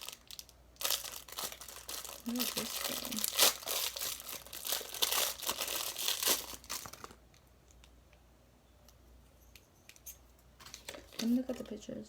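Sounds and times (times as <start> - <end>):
packaging crinkling: 0.0 - 7.4, 10.6 - 11.8.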